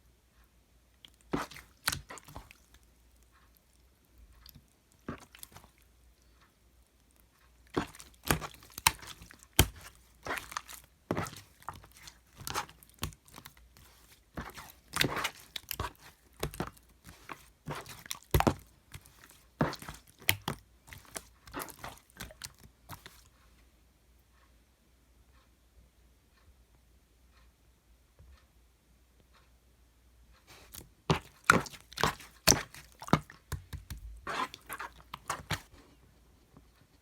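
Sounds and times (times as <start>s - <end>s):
slime squishing and popping: 1.3s - 2.7s, 7.7s - 23.2s, 30.7s - 35.7s.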